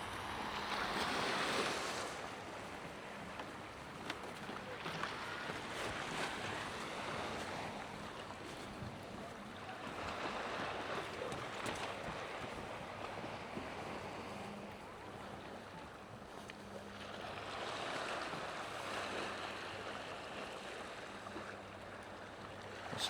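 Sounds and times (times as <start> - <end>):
sea waves washing ashore: 0.0 - 4.0.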